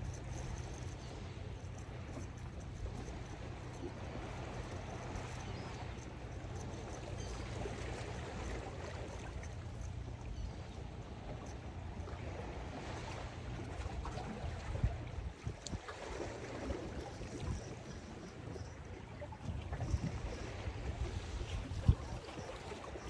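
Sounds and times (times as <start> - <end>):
wind on microphone: 13.7 - 23.0.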